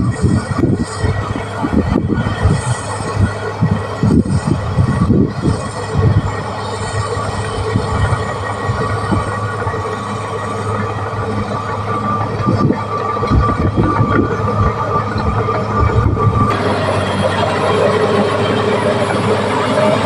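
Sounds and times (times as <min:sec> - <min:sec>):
bulldozer engine under load: 0:00.0 - 0:20.0
high whine: 0:00.0 - 0:20.0
steel tracks clanking: 0:00.0 - 0:20.0.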